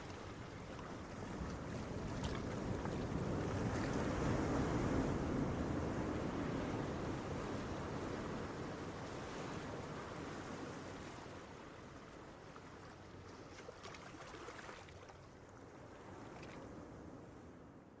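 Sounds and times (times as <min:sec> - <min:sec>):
ocean waves washing onto beach: 0:00.0 - 0:12.3.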